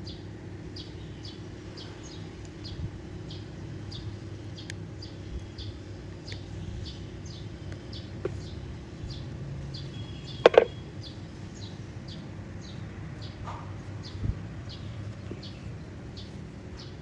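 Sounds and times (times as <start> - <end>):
low steady hum: 0.0 - 17.0
sharp clicks: 10.4 - 10.7.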